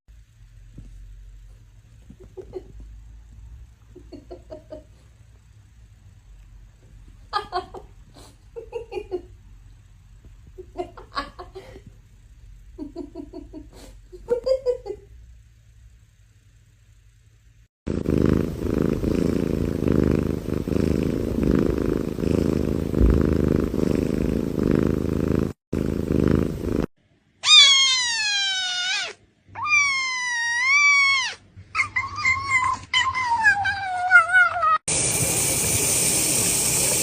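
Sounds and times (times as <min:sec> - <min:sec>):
cat purring: 0:17.9 - 0:26.9
cat meowing: 0:27.4 - 0:34.8.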